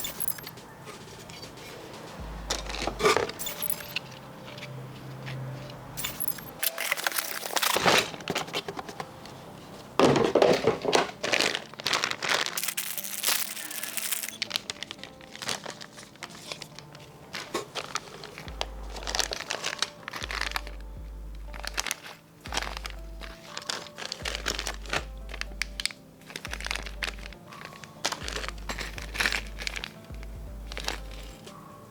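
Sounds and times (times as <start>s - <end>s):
plastic bags crinkling: 0.0s - 1.1s, 2.5s - 4.2s, 5.4s - 31.6s
background music: 0.0s - 31.9s
clicks of parts handled: 6.0s - 9.0s.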